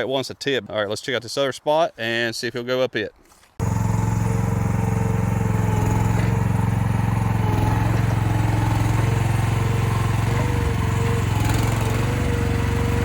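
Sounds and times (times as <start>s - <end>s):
small excavator engine running: 3.6s - 13.0s.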